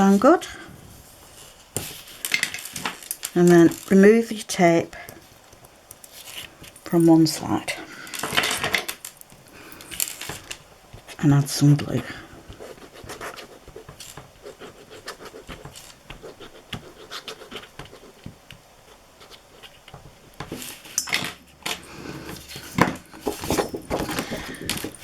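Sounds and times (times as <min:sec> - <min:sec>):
paper rustling: 0:12.0 - 0:25.0
cardstock taps and scratches: 0:12.5 - 0:18.6, 0:22.7 - 0:25.0.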